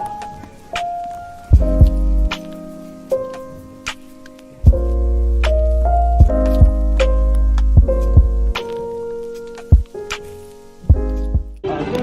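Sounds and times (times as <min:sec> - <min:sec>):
kick drum thumps: 0:01.5 - 0:02.0, 0:04.7 - 0:04.9, 0:06.2 - 0:08.6, 0:09.7 - 0:10.0, 0:10.9 - 0:11.6
deep steady bass: 0:01.5 - 0:02.3, 0:04.7 - 0:08.6, 0:10.9 - 0:11.6.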